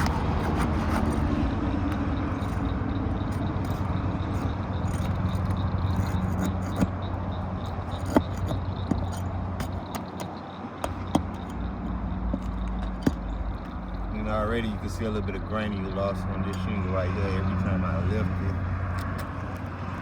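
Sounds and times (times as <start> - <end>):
tool scraping under shingles: 0.0 - 13.9.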